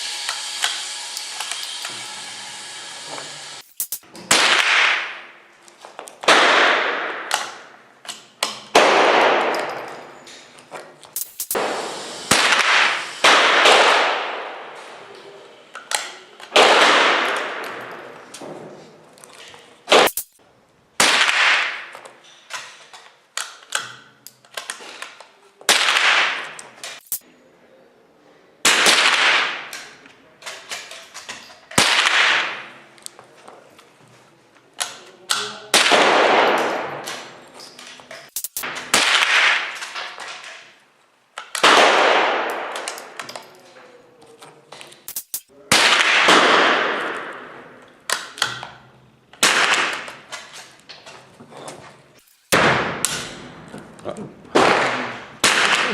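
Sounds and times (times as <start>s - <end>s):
rifle shots echoing: 4.3s - 5.3s, 6.2s - 7.8s, 8.7s - 9.9s, 11.2s - 15.0s, 16.5s - 18.2s, 21.0s - 22.0s, 25.7s - 27.2s, 28.6s - 29.9s, 31.8s - 32.8s, 35.7s - 37.4s, 38.4s - 40.0s, 41.6s - 43.2s, 45.1s - 47.8s, 49.4s - 50.3s, 52.5s - 53.5s, 54.5s - 55.9s.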